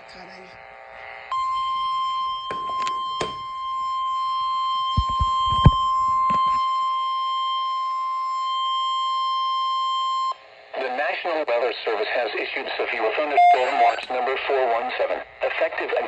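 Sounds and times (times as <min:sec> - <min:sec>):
short low thumps: 0:04.9 - 0:06.2
steady alert tone: 0:13.4 - 0:14.0.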